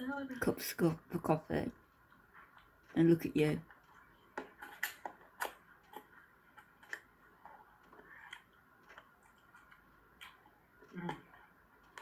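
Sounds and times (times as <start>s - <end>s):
quiet chewing: 1.9s - 3.0s, 3.6s - 12.0s.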